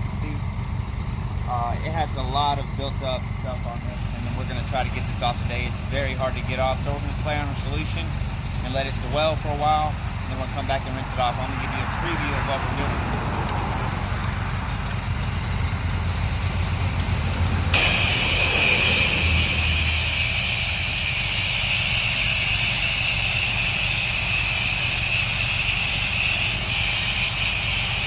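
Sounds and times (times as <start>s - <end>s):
pressure washer engine running: 0.0s - 28.0s
spray wand hissing: 17.8s - 28.0s.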